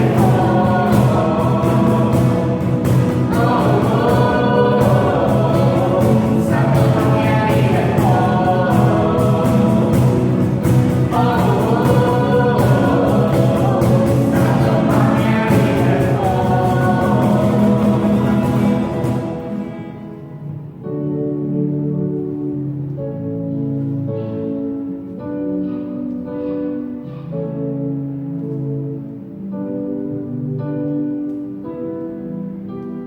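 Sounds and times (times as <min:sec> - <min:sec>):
group singing praise song: 0:00.0 - 0:19.8
band instrumental backing: 0:00.0 - 0:22.6.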